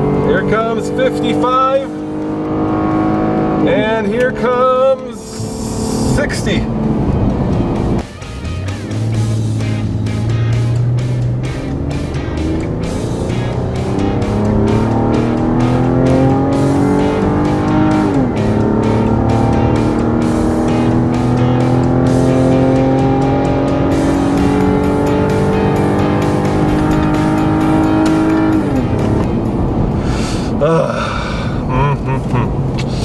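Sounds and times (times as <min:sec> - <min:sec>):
truck engine accelerating hard: 0:00.0 - 0:33.0
music with a steady beat: 0:06.8 - 0:29.8.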